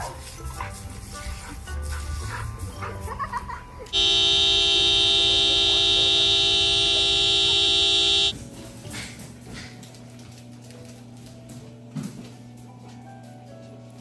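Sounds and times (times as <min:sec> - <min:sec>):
horn blaring: 0:03.9 - 0:08.4.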